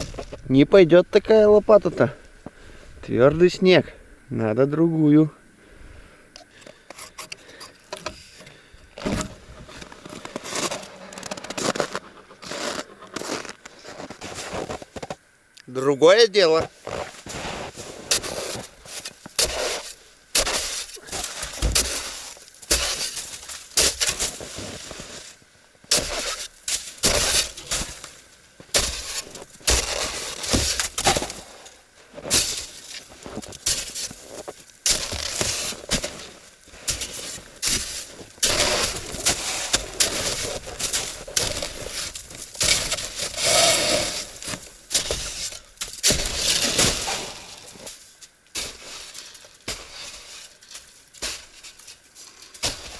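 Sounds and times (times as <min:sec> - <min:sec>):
shovel chopping frozen snow: 0:09.0 - 0:15.2, 0:16.7 - 0:25.3, 0:25.9 - 0:52.9.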